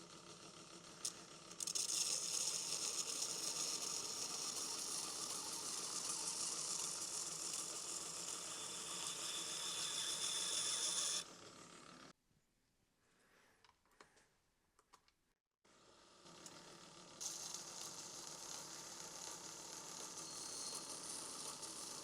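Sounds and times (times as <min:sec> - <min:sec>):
knife grinding on belt sander: 0:01.0 - 0:11.3, 0:16.4 - 0:22.0.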